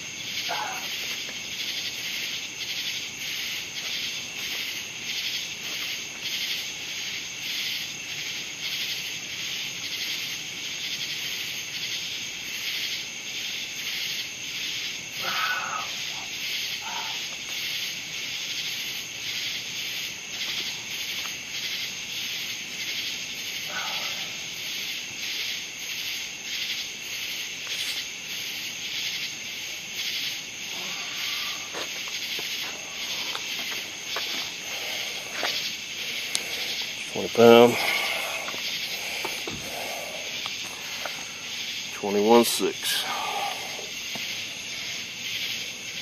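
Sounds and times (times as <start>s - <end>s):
insects chirping: 0.0s - 46.0s
faint calls: 0.4s - 1.2s, 15.1s - 17.9s, 30.2s - 45.0s.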